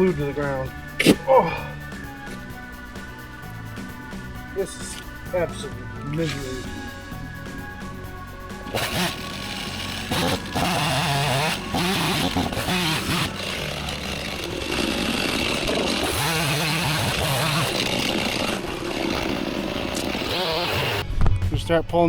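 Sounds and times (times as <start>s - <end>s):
chainsaw cutting log: 1.0s - 2.4s, 8.6s - 21.0s.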